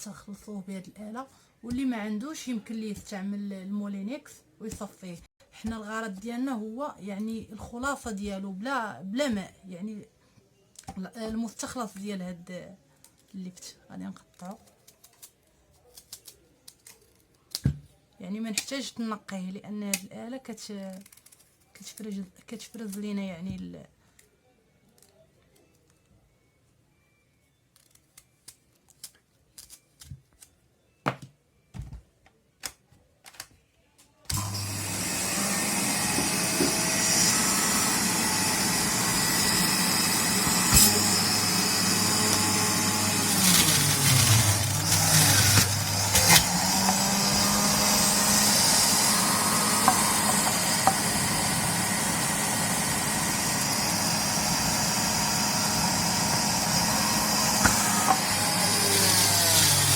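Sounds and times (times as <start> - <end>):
electric juicer motor whirring: 34.3 - 59.9.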